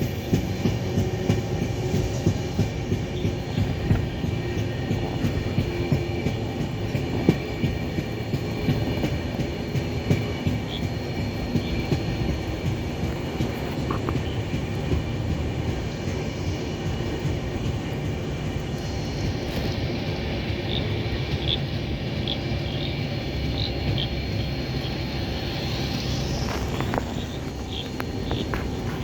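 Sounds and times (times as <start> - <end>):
train running on tracks: 0.0 - 29.0.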